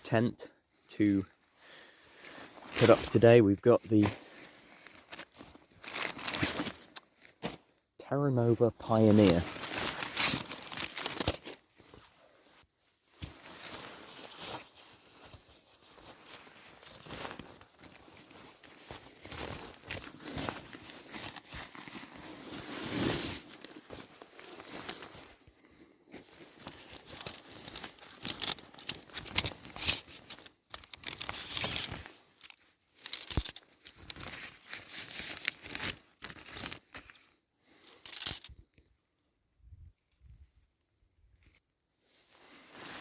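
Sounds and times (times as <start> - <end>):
tent fabric rustling: 4.0 - 7.8, 8.9 - 32.4, 42.1 - 43.0.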